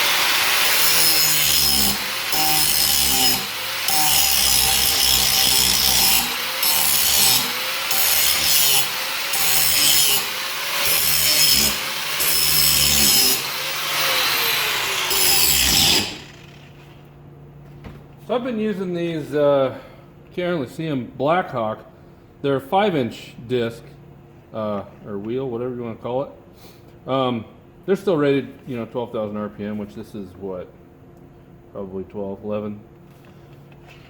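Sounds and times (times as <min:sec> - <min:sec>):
angle grinder grinding metal: 0:00.0 - 0:17.0.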